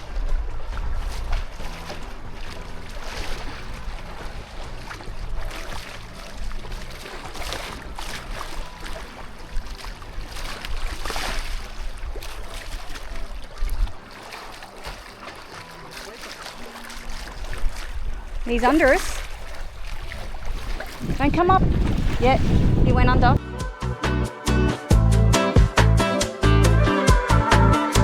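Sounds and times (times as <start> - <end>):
wind rumble on microphone: 0.0 - 14.0, 17.0 - 23.4
water sloshing in swells: 0.0 - 23.9.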